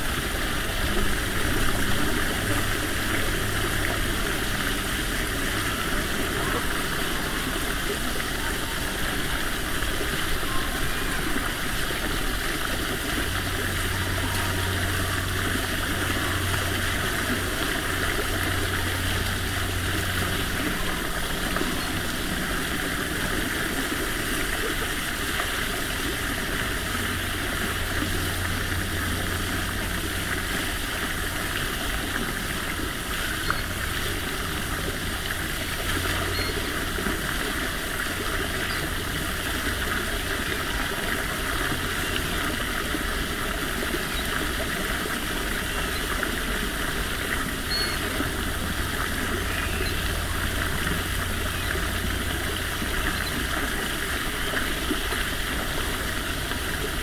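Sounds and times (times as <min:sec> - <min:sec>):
low hum: 0:00.0 - 0:25.4
running water gurgling: 0:00.0 - 0:57.0.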